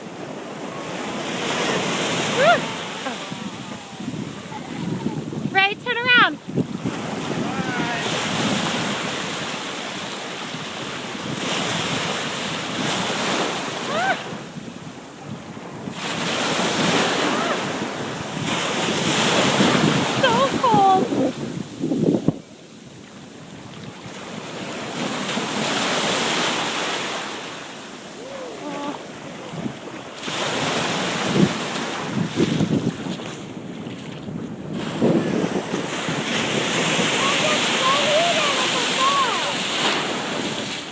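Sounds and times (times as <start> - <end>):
ocean surf washing in: 0.0 - 40.9
wind buffeting microphone: 0.1 - 25.8, 28.2 - 40.9
high-pitched voice: 37.2 - 39.6.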